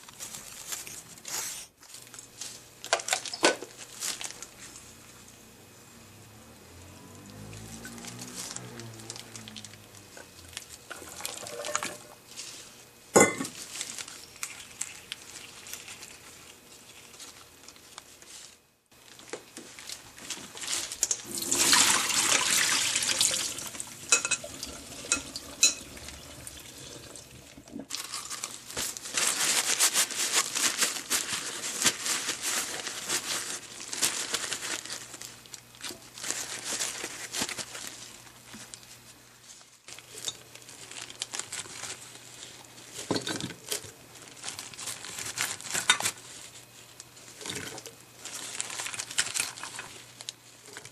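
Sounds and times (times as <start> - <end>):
water running into sink: 21.0 - 27.9.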